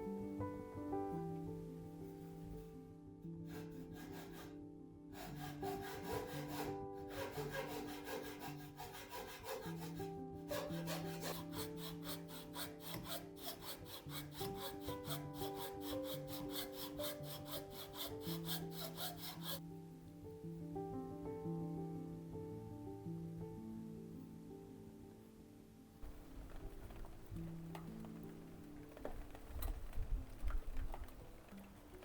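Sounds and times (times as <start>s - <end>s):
soft background music: 0.0s - 32.0s
hand tool rubbing wood: 3.5s - 4.6s, 5.2s - 19.6s.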